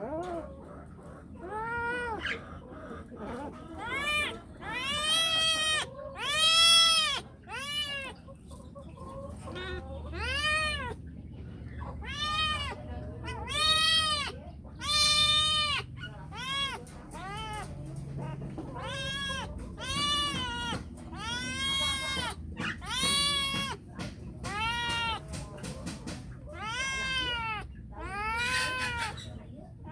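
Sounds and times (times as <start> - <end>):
cat meowing: 1.4 - 2.5, 3.3 - 8.3, 9.4 - 11.1, 11.8 - 29.3.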